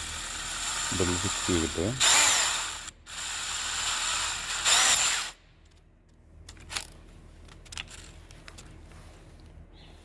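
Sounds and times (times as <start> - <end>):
electric drill running: 0.0 - 5.4.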